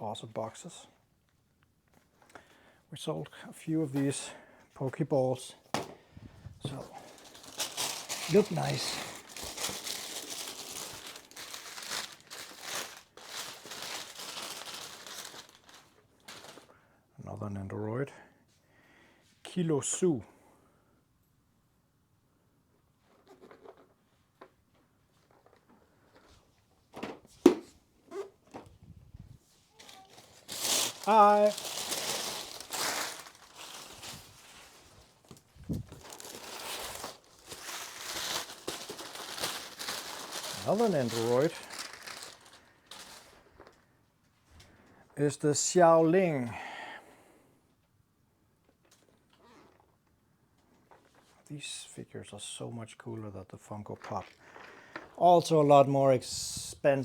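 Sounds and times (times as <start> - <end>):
packaging crinkling and rustling: 6.6 - 16.7, 29.7 - 43.9.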